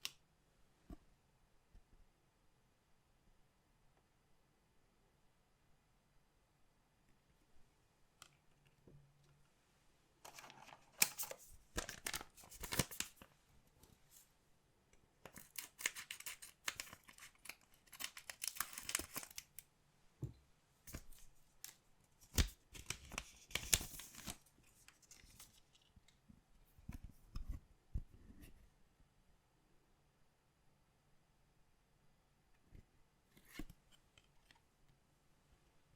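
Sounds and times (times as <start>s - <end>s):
wrapper crinkling and clicks: 10.2s - 13.3s, 15.3s - 19.6s
card pack wrappers tearing: 10.3s - 13.2s, 15.3s - 19.5s.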